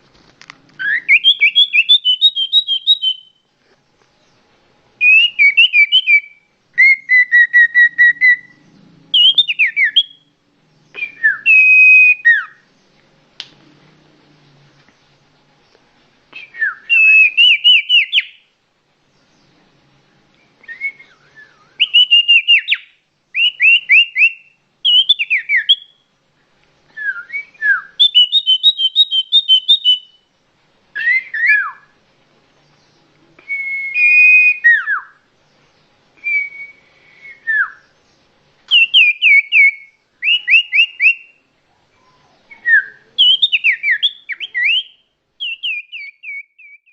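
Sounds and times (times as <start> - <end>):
songbird singing: 0.5 - 46.9.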